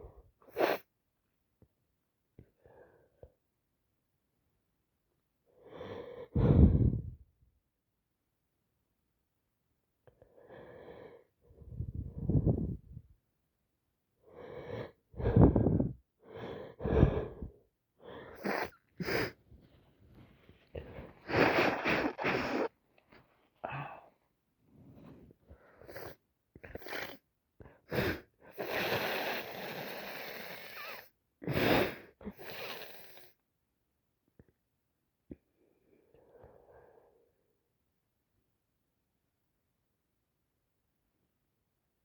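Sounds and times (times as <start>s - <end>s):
breaths: 5.6s - 7.2s, 10.1s - 13.0s, 14.3s - 33.4s, 35.3s - 37.5s
person sneezing: 21.2s - 22.7s.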